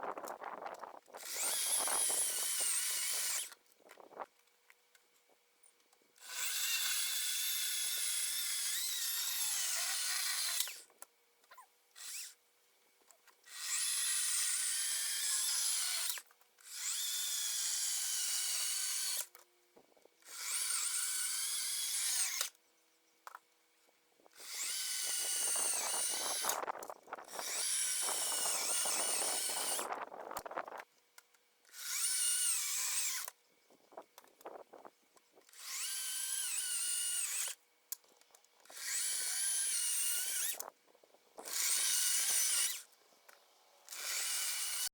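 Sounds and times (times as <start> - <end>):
electric chainsaw cutting wood: 1.0 - 3.6, 6.2 - 10.9, 12.0 - 12.4, 13.5 - 19.4, 20.2 - 22.6, 24.3 - 30.5, 31.7 - 33.4, 35.4 - 37.6, 38.6 - 40.8, 41.4 - 43.0, 43.8 - 44.9.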